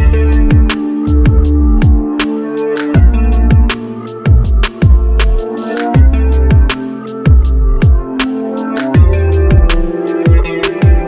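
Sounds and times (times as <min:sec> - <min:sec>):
deep bass kicks: 0:00.0 - 0:02.2, 0:03.0 - 0:03.7, 0:04.3 - 0:05.4, 0:06.0 - 0:06.7, 0:07.3 - 0:08.1, 0:09.0 - 0:10.5
crisp hi-hats: 0:00.0 - 0:11.0.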